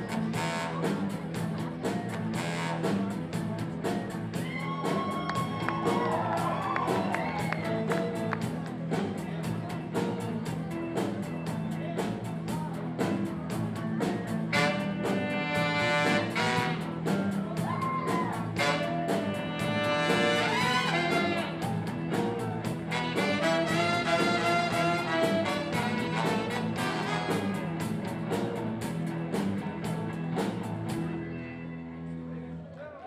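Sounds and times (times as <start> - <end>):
brass horns: 0.0 - 1.4, 2.3 - 3.4, 14.5 - 17.4, 18.5 - 21.8, 22.7 - 27.9
steady drum beat: 0.0 - 31.2
blues band music: 0.0 - 32.3.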